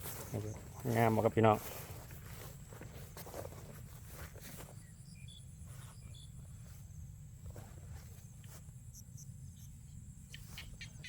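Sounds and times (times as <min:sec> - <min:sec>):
insects trilling: 0:03.8 - 0:11.0.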